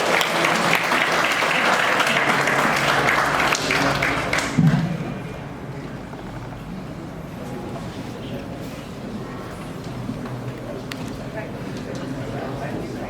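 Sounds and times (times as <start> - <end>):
audience applauding: 0.0 - 5.0.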